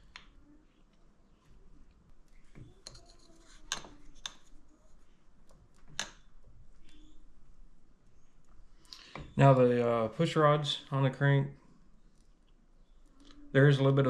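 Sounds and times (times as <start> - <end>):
metal parts clicking and tapping: 2.5 - 4.5.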